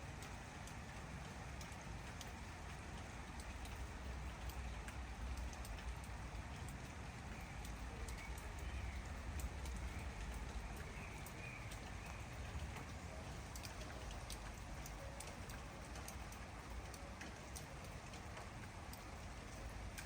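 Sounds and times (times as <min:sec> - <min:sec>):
raindrops ticking on leaves: 0:00.0 - 0:20.0
steady rain: 0:00.0 - 0:20.0.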